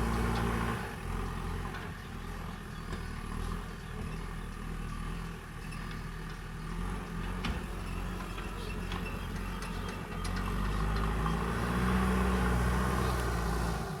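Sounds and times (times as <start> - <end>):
heavy machinery diesel engine: 0.0 - 14.0.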